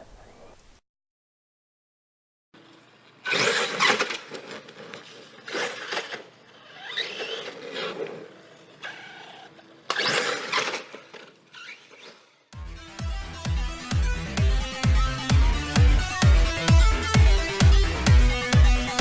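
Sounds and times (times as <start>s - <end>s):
electric rc car motor bursts: 3.2s - 4.4s, 5.4s - 12.4s.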